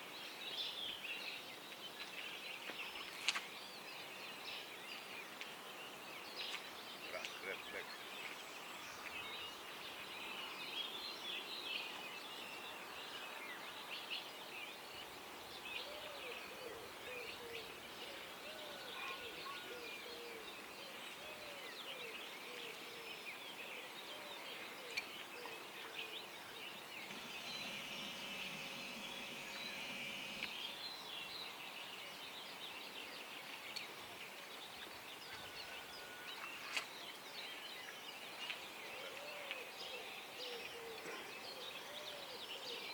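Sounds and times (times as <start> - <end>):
birds chirping in dawn chorus: 24.0 - 31.4
low repeated bird calls: 24.9 - 30.8.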